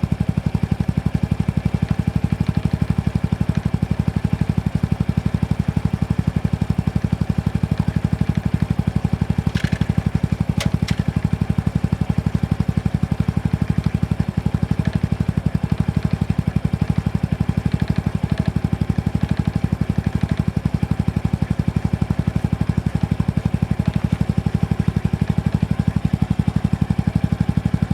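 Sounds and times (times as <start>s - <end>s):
motorcycle engine idling: 0.1s - 27.9s
clattering rattle: 9.4s - 11.2s.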